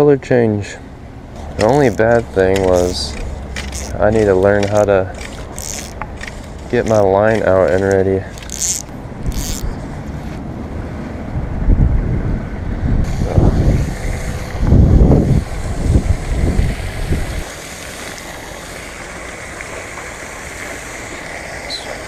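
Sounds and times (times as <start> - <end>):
wind buffeting microphone: 1.3 - 17.5.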